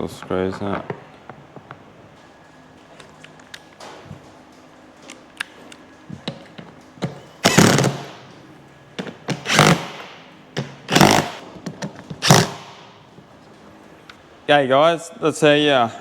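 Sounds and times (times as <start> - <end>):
power driver driving screws: 7.4 - 8.2, 9.3 - 11.4, 12.2 - 12.9.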